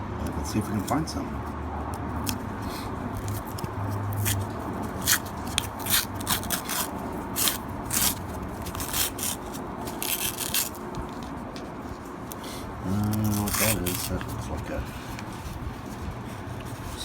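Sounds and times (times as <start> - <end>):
paper crackling: 2.2 - 17.0.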